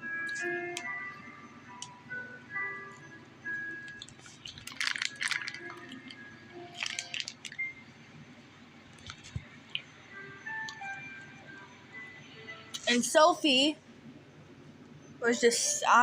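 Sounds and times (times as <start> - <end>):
plinking background music: 0.0 - 8.0, 9.7 - 13.2.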